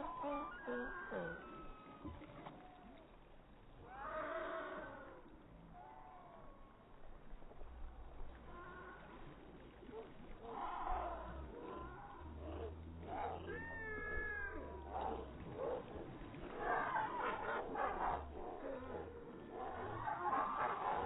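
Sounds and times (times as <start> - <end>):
seagulls calling: 0.0 - 2.8, 10.6 - 15.9.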